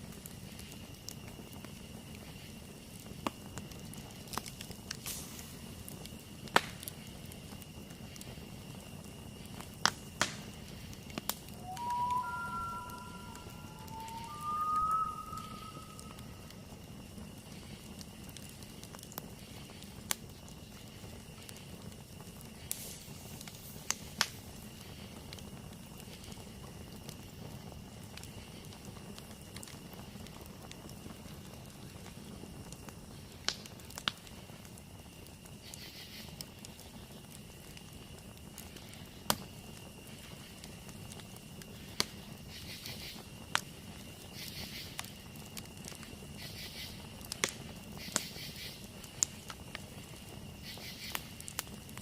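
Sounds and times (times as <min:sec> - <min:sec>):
campfire crackling: 0:00.0 - 0:52.0
insect drone: 0:00.0 - 0:52.0
insect trilling: 0:11.5 - 0:16.7.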